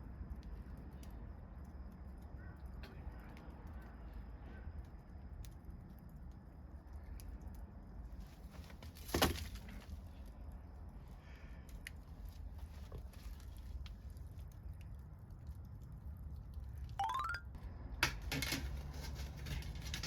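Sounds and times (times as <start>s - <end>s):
wood fire crackling: 10.1s - 16.9s.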